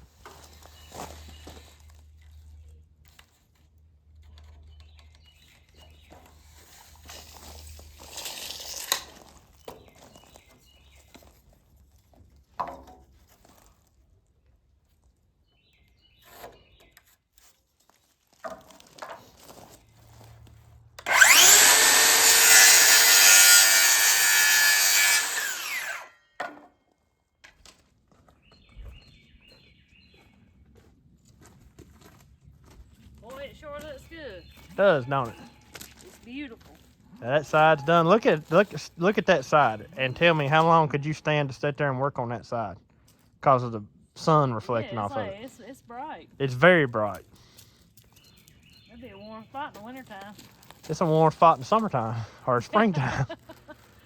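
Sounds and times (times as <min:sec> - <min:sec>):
power saw cutting wood: 0:07.1 - 0:09.2, 0:21.0 - 0:26.2, 0:34.7 - 0:35.5, 0:37.2 - 0:42.6, 0:50.9 - 0:53.2.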